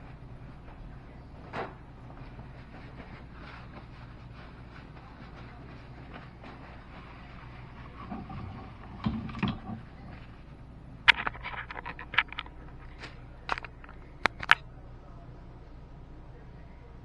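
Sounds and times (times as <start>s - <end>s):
low steady hum: 0.0s - 17.0s
sharp clicks and knocks: 11.1s - 14.6s.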